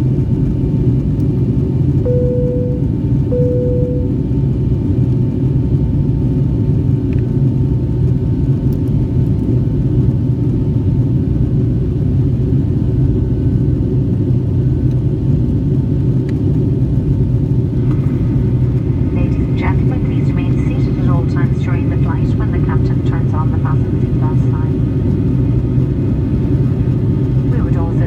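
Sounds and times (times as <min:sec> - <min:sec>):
airplane cabin rumble: 0:00.0 - 0:28.0
chime tone: 0:02.1 - 0:02.8.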